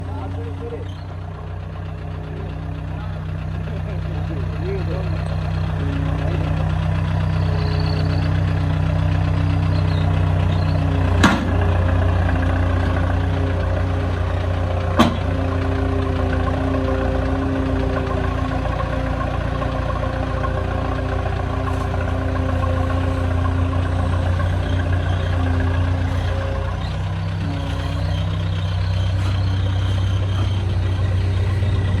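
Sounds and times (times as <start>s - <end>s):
diesel engine running: 0.0s - 32.0s
sharp knocks: 15.0s - 15.4s.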